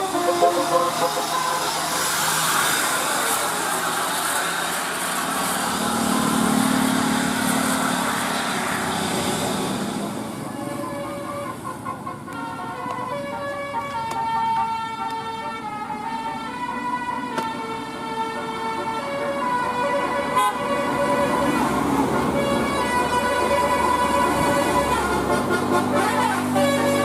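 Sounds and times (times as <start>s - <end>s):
multi-trumpet horn playing tune: 0.0s - 2.5s
bus passing with rushing noise: 0.0s - 27.0s.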